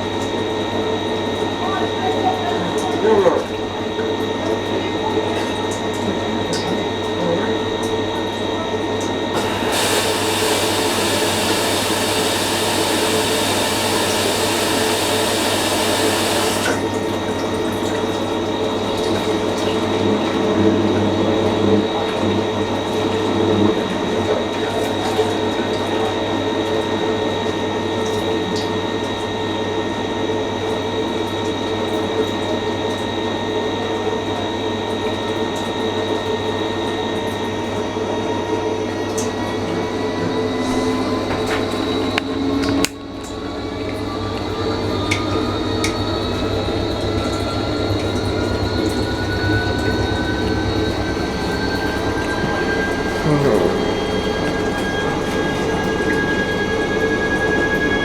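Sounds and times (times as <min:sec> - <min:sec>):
washing machine humming: 0:00.0 - 0:58.0
loud water hiss: 0:09.4 - 0:16.9.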